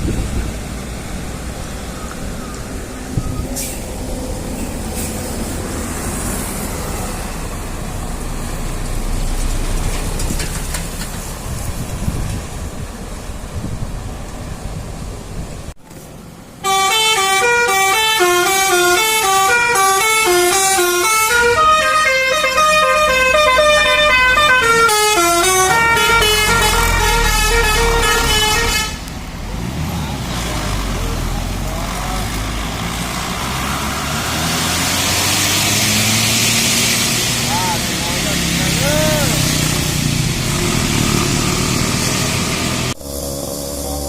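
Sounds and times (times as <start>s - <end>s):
vehicle engine and road noise: 0.0s - 44.0s
bus horn playing a melody: 16.6s - 29.1s.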